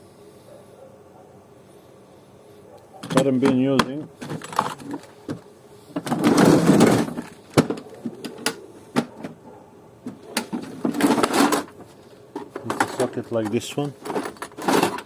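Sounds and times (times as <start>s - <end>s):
scraping and rustling: 4.2s - 9.4s, 10.0s - 15.0s.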